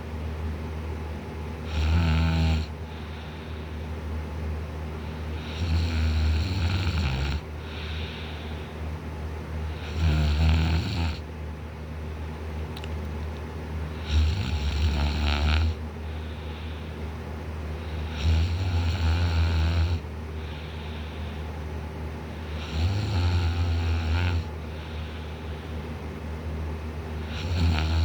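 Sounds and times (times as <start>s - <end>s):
man snoring loudly: 1.6s - 2.7s, 5.4s - 8.2s, 9.7s - 11.2s, 13.9s - 15.8s, 17.9s - 20.0s, 22.5s - 24.5s, 27.2s - 28.0s
quiet breathing: 2.8s - 4.0s, 7.4s - 8.9s, 13.9s - 18.8s, 20.3s - 21.6s, 22.2s - 26.1s.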